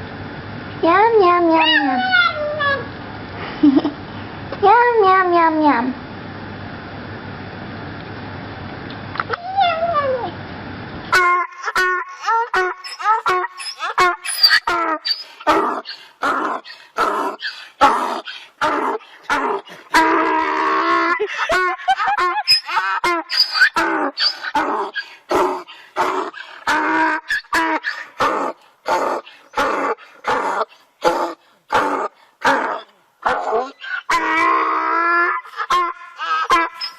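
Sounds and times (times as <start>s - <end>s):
dog drawn-out call: 11.1s - 36.9s
dog barking: 30.3s - 32.6s.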